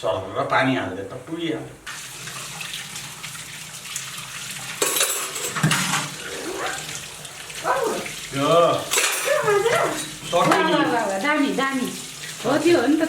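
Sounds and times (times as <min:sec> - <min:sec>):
water running from a tap: 0:00.6 - 0:13.0
dishes clattering: 0:04.7 - 0:06.9, 0:08.9 - 0:11.1.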